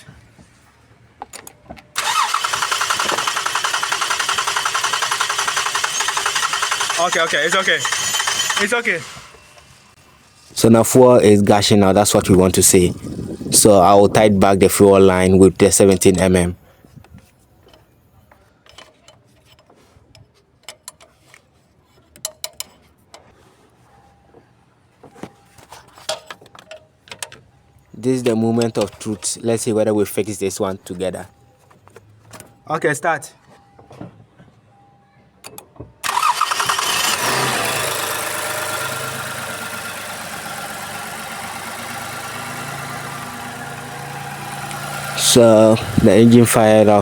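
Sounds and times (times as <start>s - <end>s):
engine cranking by starter: 2.0s - 10.6s, 36.0s - 47.0s.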